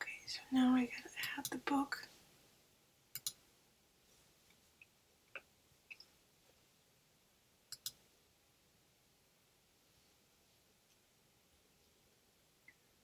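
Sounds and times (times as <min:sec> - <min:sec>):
computer mouse clicking: 0:03.1 - 0:03.4, 0:07.7 - 0:08.0.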